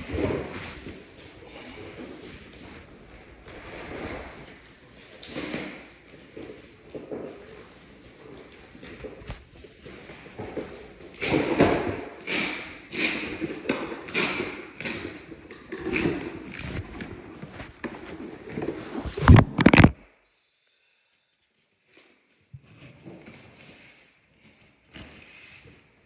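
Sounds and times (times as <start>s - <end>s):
cardboard scuffs and knocks: 16.7s - 20.0s
loud thumps: 19.0s - 20.0s.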